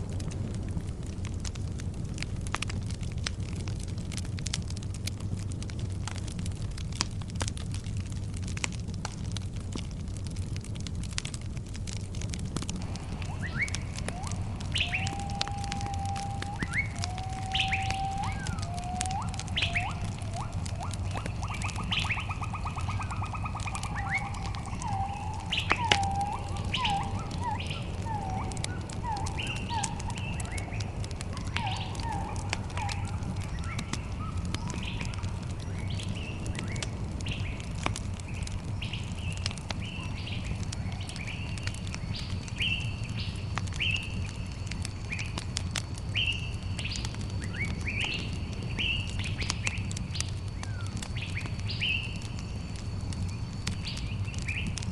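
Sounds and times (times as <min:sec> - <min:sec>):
campfire crackling: 0:00.0 - 0:54.9
campfire rumble: 0:00.0 - 0:54.9
birds singing and chirping: 0:12.9 - 0:37.7.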